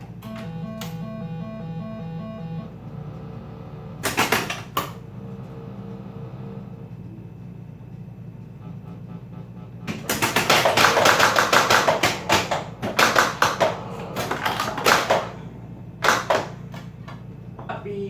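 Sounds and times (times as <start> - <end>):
pinball machine humming: 0.0 - 18.0
pinball clacks and knocks: 4.0 - 5.0, 9.8 - 15.4, 16.0 - 17.3.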